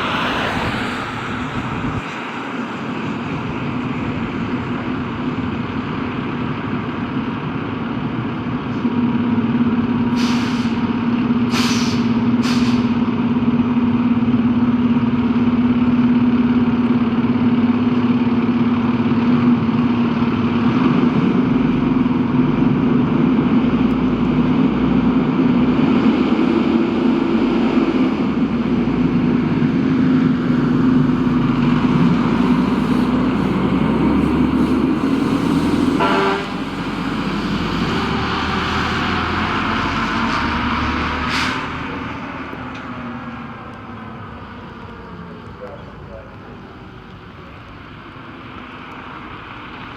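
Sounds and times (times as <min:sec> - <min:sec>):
diesel engine droning: 0:00.0 - 0:49.9
air brake hisses: 0:10.1 - 0:10.8, 0:11.5 - 0:13.0, 0:41.2 - 0:41.8.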